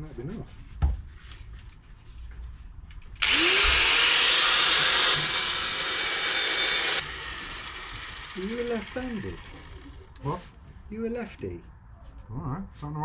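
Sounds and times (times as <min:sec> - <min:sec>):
power grinder grinding steel: 0:03.2 - 0:10.4.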